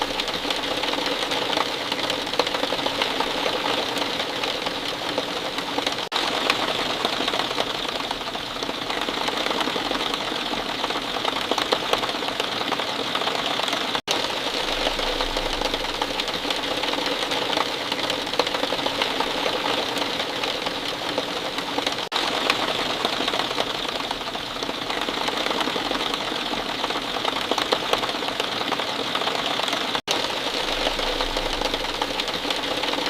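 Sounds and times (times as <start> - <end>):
rain falling: 0.0 - 33.0.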